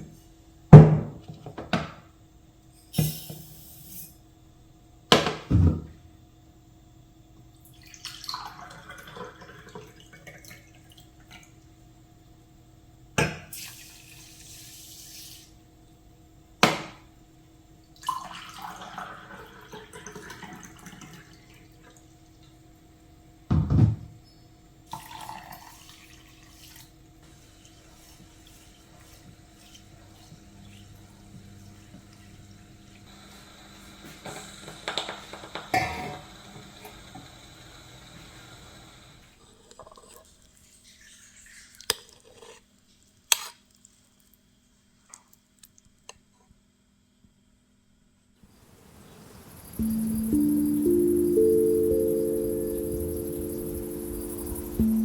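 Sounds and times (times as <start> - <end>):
water splashing into sink: 7.8 - 11.0.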